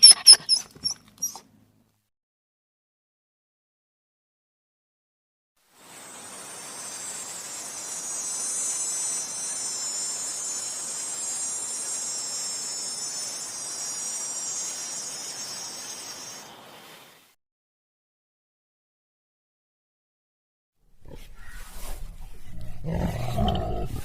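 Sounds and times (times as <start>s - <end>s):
faint background hiss: 5.6s - 17.4s
insects chirping: 5.8s - 17.2s.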